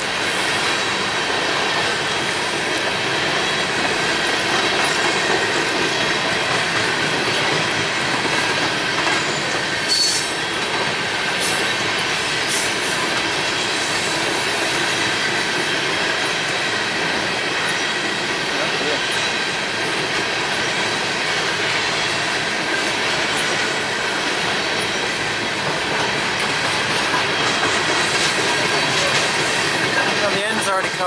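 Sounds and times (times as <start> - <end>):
train wheels rumbling on rail: 0.0 - 31.0
high wheel squeal: 9.2 - 10.5.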